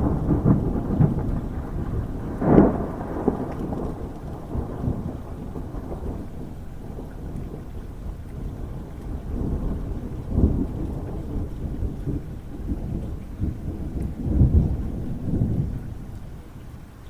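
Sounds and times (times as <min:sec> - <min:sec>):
thunder rumbling: 0:00.0 - 0:16.9.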